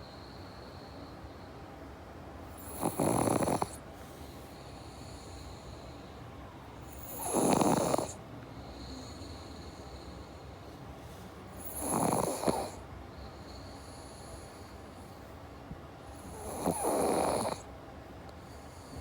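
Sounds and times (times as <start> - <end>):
dog snoring: 2.5 - 6.2, 6.8 - 10.6, 11.5 - 15.1, 16.1 - 17.7.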